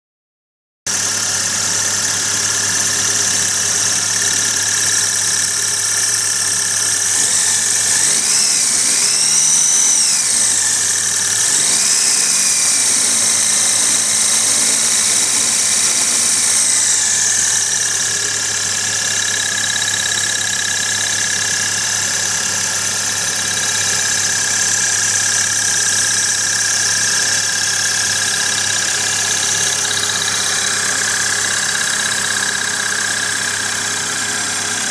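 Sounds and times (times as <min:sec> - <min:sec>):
air compressor whining: 0:00.9 - 0:34.9.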